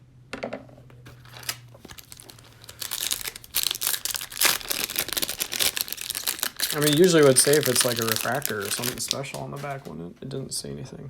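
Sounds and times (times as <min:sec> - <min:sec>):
foil wrapper crinkling and tearing: 0:01.1 - 0:09.9.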